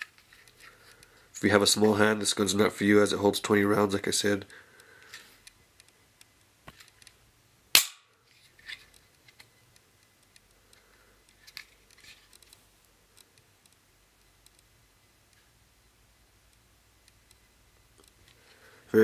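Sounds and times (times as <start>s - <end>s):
pistol parts clicking: 5.0s - 12.6s
pistol mechanical snap: 7.7s - 8.2s.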